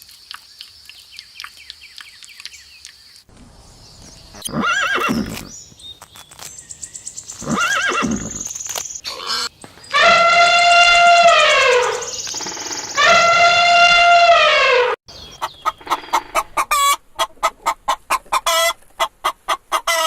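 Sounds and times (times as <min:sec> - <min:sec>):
horse whinnying: 0:04.5 - 0:05.5, 0:07.4 - 0:08.4
loud animal call: 0:09.1 - 0:15.0.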